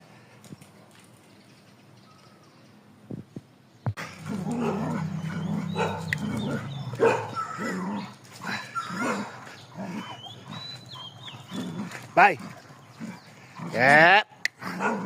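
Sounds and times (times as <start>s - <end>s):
dog growling: 4.0s - 15.0s
dogs barking and yelping: 4.0s - 15.0s.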